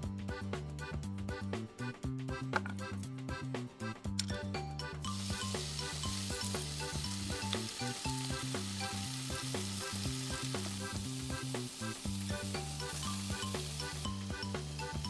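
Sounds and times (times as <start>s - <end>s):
background music with beat: 0.0s - 15.0s
food sizzling in a pan: 5.1s - 15.0s.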